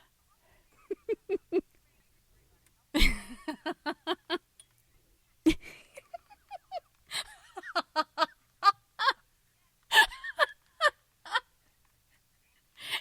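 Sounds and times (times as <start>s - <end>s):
woman laughing: 0.7s - 1.8s, 3.0s - 4.4s, 5.5s - 9.2s, 9.9s - 11.5s
woman gasping: 12.8s - 13.0s.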